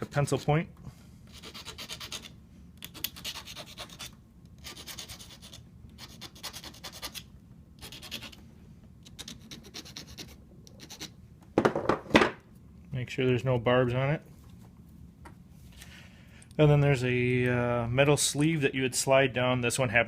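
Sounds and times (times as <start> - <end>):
hand file rasping on metal: 1.3 - 7.2, 7.8 - 8.4, 9.2 - 11.1.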